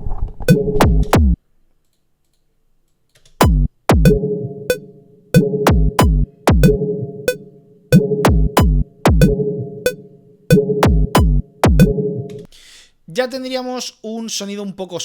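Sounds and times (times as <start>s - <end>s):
feedback drum loop: 0.5s - 1.4s, 3.4s - 4.4s, 5.4s - 12.0s.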